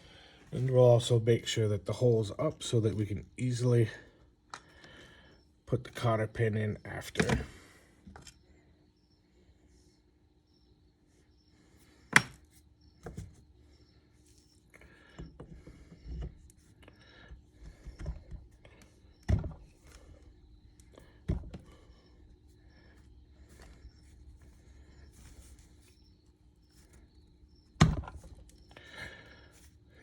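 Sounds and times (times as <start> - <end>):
soft scraping and fiddling: 17.4 - 27.6.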